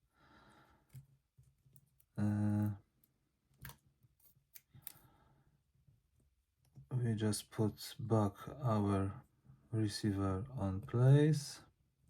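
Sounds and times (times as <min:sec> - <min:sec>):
small parts and tools clicking: 0:00.8 - 0:05.0.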